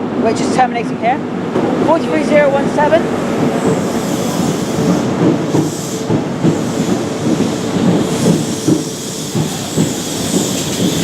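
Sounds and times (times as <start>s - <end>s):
diesel train engine: 1.2s - 11.0s
train wheels on rails: 1.4s - 11.0s
hiss: 3.5s - 11.0s.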